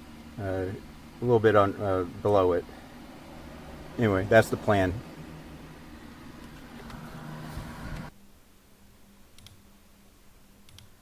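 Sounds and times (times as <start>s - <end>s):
car interior hum: 0.0s - 8.1s.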